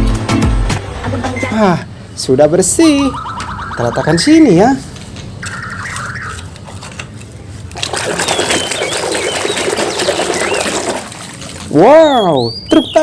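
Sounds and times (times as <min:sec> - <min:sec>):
water splashing and running: 0:07.7 - 0:11.9.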